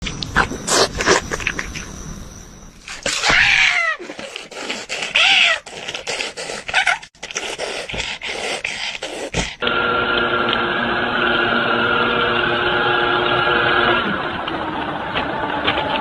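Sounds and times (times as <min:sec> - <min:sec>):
animal crying: 0:03.0 - 0:09.4.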